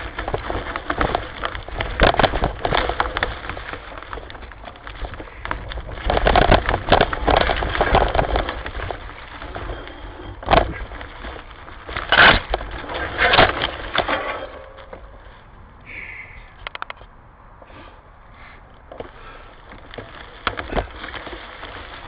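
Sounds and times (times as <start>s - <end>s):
twigs snapping: 0.0s - 15.1s.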